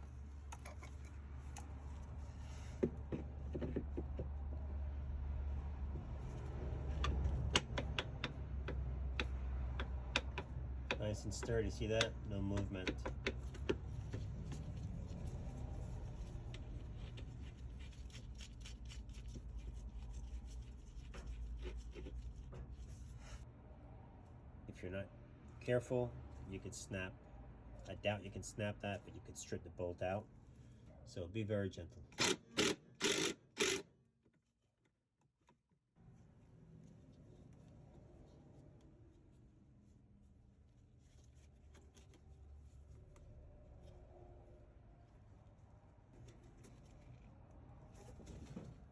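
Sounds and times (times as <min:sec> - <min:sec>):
rubbing and handling noise: 0:00.0 - 0:23.5, 0:36.0 - 0:48.9
faint clicks and scrapes: 0:00.4 - 0:04.6, 0:40.6 - 0:48.9
ratchet clicking: 0:32.2 - 0:33.8.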